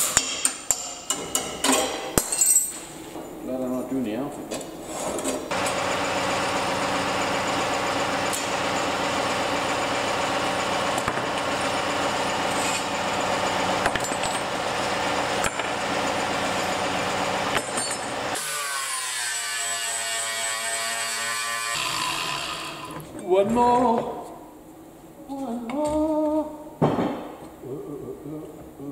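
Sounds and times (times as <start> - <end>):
electric power tool running: 5.5 - 23.1.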